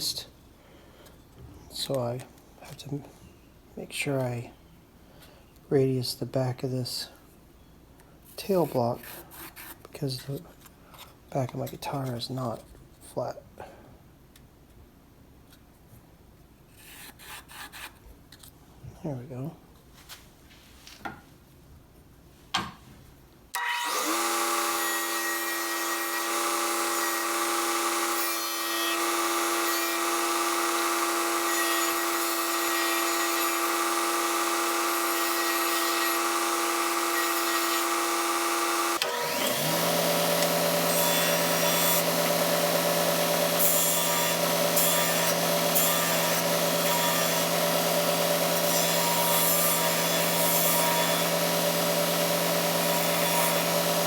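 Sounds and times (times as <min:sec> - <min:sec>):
power tool cutting wood: 0:23.6 - 0:54.0.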